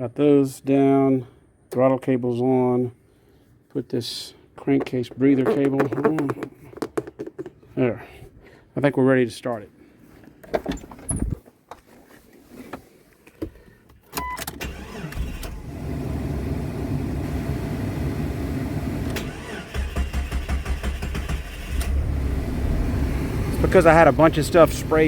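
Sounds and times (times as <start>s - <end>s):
engine cranking and idling: 14.6s - 25.0s.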